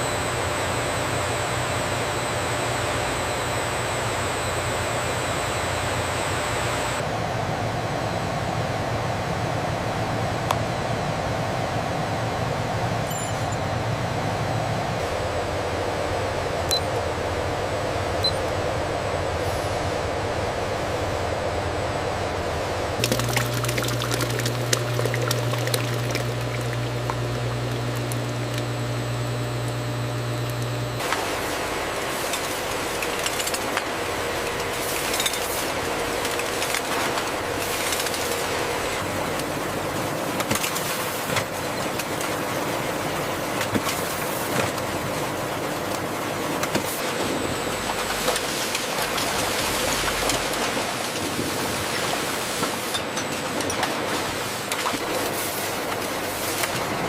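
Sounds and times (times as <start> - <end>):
low machine hum: 0.0 - 57.0
liquid pouring: 23.0 - 27.1.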